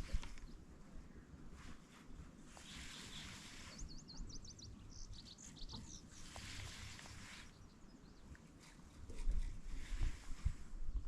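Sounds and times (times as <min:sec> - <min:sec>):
bird chirping: 0:02.6 - 0:08.4.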